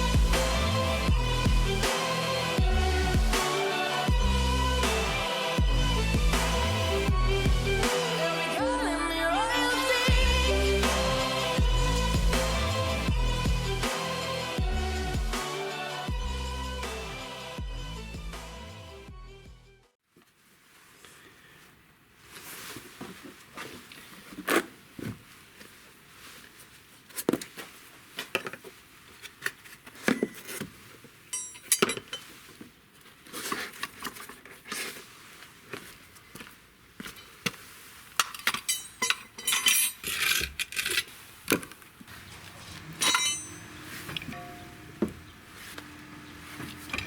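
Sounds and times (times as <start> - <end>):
metal tools clinking on concrete: 31.3 - 32.3, 38.2 - 41.0, 43.0 - 44.7.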